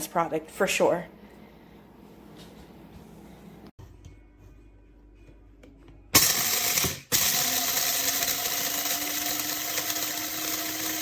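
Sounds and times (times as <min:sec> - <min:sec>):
coffee grinder whirring: 0:06.2 - 0:11.0.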